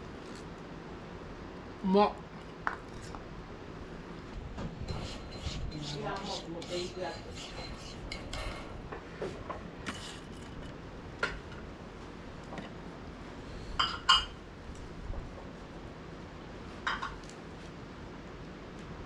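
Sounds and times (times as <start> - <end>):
dishes and utensils clinking: 13.8 - 14.4.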